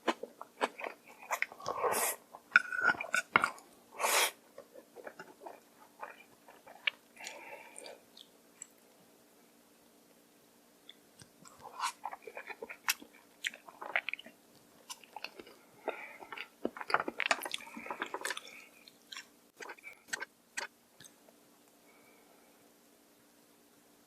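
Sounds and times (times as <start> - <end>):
person chewing noodles: 0.0 - 8.8, 10.9 - 21.2.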